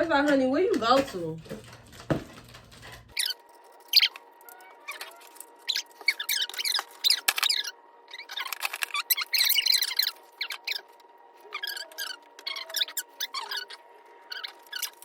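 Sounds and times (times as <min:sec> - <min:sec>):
crinkly packaging rustling: 0:00.0 - 0:05.8.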